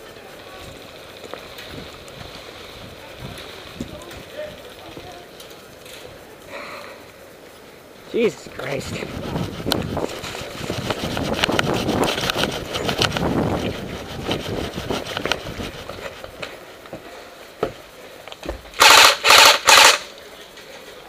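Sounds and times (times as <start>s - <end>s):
rapid clattering and rustling: 8.8s - 17.8s
airsoft gun firing bursts: 18.8s - 20.1s.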